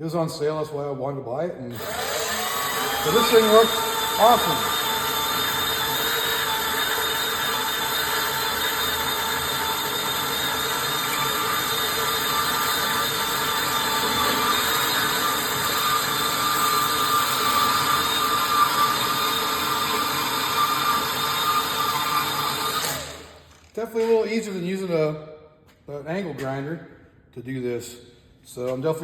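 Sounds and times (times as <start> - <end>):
band saw cutting: 1.7 - 23.8.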